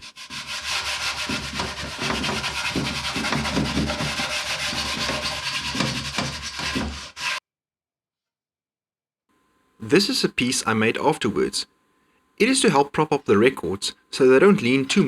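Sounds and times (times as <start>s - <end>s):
cloth rubbing on wood: 0.0s - 7.4s.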